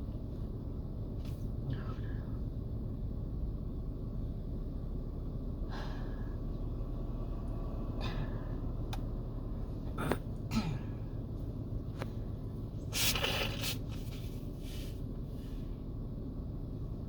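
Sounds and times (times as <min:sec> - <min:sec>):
low hum: 0:00.0 - 0:12.9.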